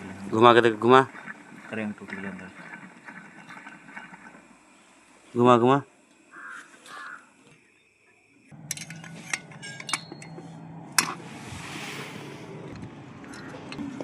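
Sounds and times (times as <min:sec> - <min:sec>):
low steady hum: 0:00.0 - 0:14.0
metal parts clicking and clinking: 0:08.7 - 0:11.2.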